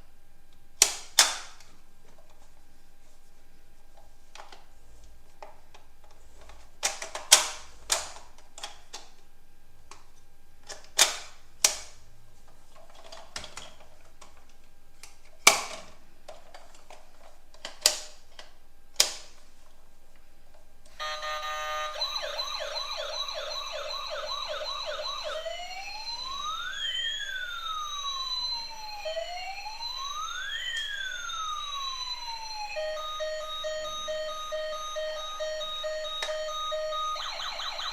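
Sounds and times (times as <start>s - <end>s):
electronic toy siren: 21.0s - 37.9s.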